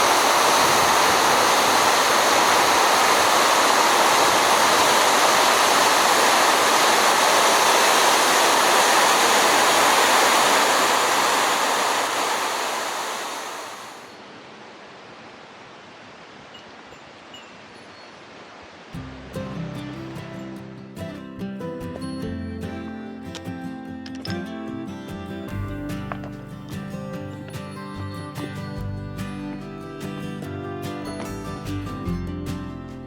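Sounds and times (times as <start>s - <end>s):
waterfall rushing: 0.0s - 14.4s.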